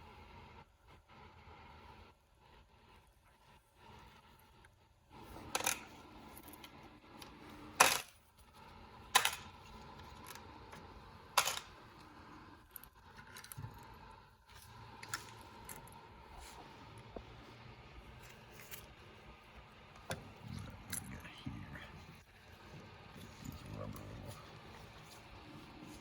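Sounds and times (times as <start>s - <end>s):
metal parts clicking and clinking: 11.4s - 11.7s, 12.7s - 13.8s.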